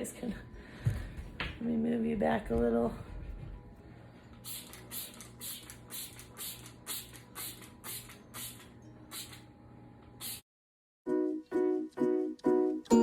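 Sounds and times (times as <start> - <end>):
spray bottle squirts hissing: 4.4 - 9.4, 10.2 - 10.4.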